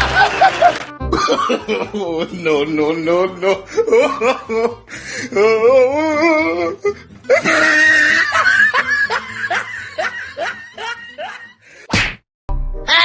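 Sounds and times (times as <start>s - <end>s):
person laughing: 0.0s - 2.4s, 3.4s - 4.8s, 5.4s - 11.7s
music: 0.0s - 11.9s, 12.5s - 13.0s.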